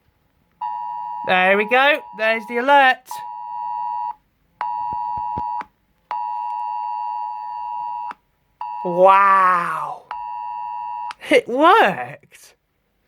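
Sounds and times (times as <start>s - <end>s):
two-pitch phone alert tone: 0.6s - 9.2s.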